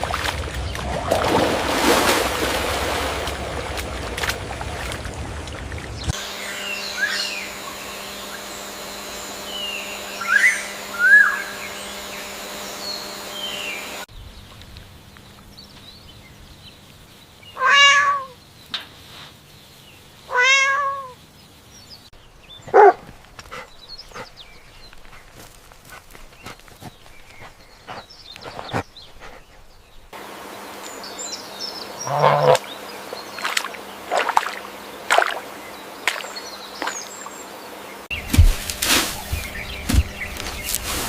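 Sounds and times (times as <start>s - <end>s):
steady hum: 6.0s - 14.1s, 30.1s - 41.0s
cat meowing: 17.6s - 18.4s, 20.3s - 21.2s.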